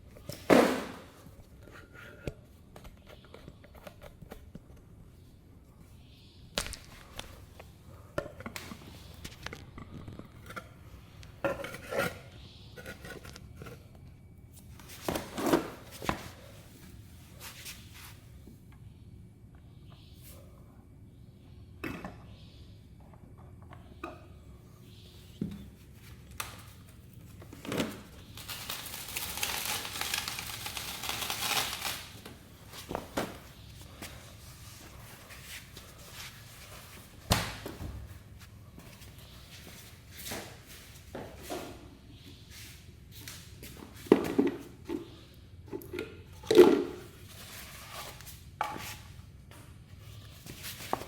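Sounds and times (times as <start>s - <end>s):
material crinkling and rustling: 27.2s - 33.7s.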